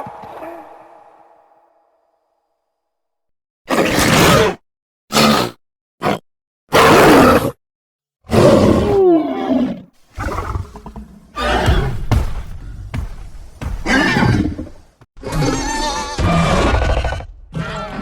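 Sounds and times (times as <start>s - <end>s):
creature roaring: 8.3s - 12.7s
creature screech: 15.2s - 18.0s.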